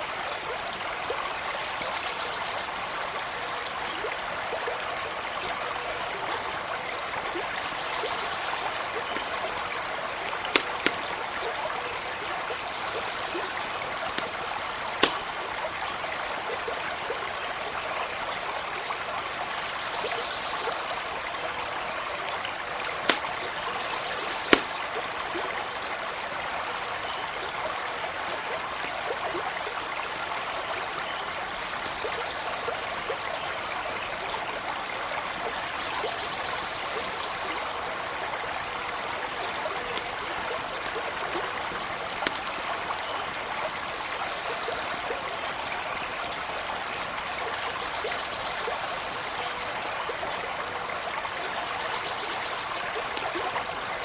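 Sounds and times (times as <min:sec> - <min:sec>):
campfire crackles and pops: 0:00.0 - 0:30.9, 0:36.7 - 0:43.9, 0:44.5 - 0:47.3
stream running: 0:00.0 - 0:54.0.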